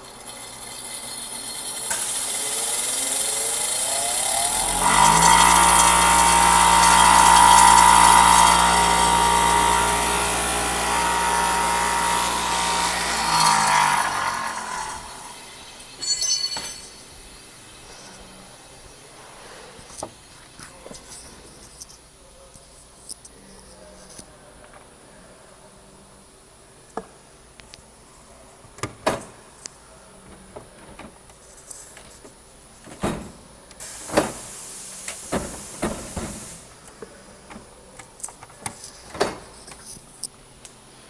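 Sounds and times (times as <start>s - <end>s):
power grinder grinding metal: 0.0s - 17.0s.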